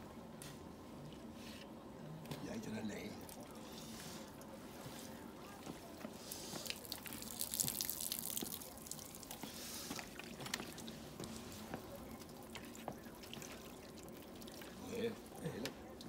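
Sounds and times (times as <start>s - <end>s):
water dripping: 6.5s - 16.0s
water splashing on ice: 6.6s - 11.0s.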